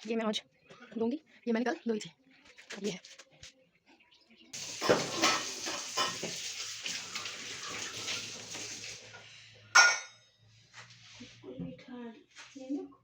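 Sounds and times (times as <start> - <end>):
water running and splashing: 4.6 - 9.2
knocks of objects in water: 4.7 - 6.5.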